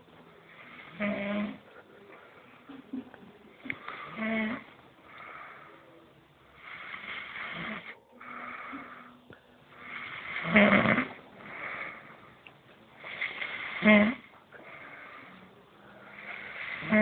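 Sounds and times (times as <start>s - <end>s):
man snoring: 0.6s - 1.6s, 3.9s - 4.7s, 6.6s - 9.2s, 9.8s - 12.1s, 13.1s - 15.3s, 16.0s - 17.0s.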